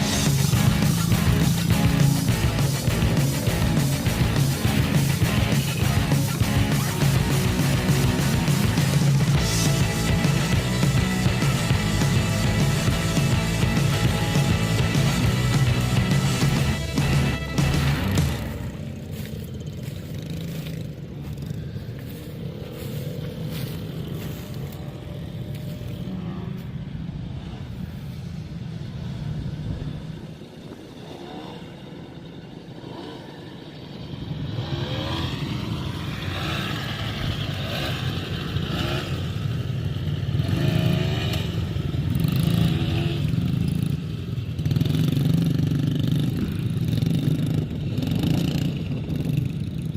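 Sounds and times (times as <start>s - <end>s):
dirt bike engines revving: 0.0s - 49.9s.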